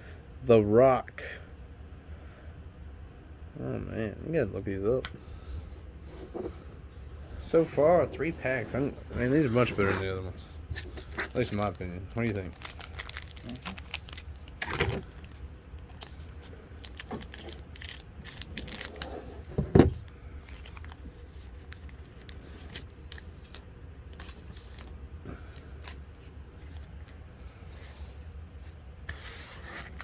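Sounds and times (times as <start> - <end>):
cards and foil wrapper crinkling: 9.2 - 10.1, 10.8 - 27.2.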